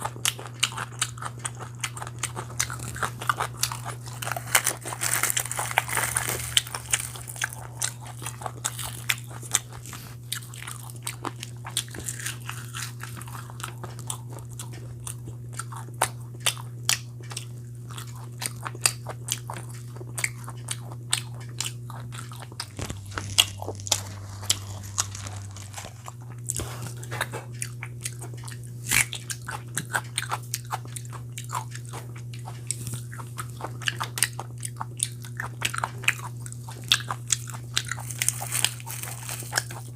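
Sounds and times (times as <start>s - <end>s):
person chewing and crunching food: 0.0s - 39.9s
steady low hum: 0.0s - 39.9s.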